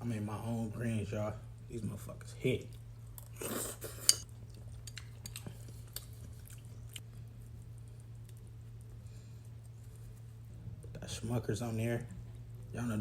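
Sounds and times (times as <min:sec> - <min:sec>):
steady low hum: 0:00.0 - 0:13.0
person chewing food: 0:02.6 - 0:10.9.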